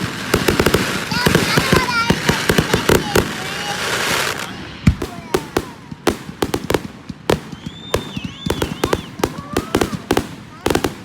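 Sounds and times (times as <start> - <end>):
fireworks bangs and cracks: 0.0 - 11.0.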